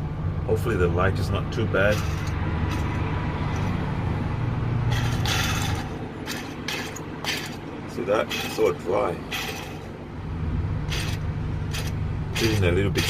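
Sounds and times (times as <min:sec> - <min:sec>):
road traffic rumble: 0:00.0 - 0:13.0
rasping scrape: 0:01.9 - 0:03.9, 0:04.9 - 0:09.9, 0:10.9 - 0:13.0.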